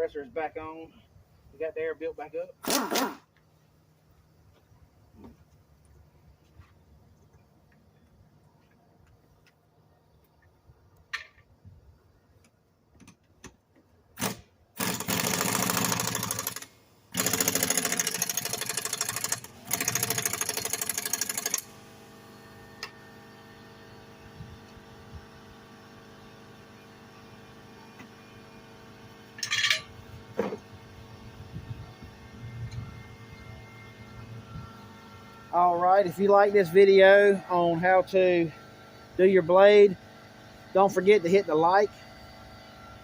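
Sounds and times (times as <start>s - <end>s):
steady hum: 21.6s - 43.0s.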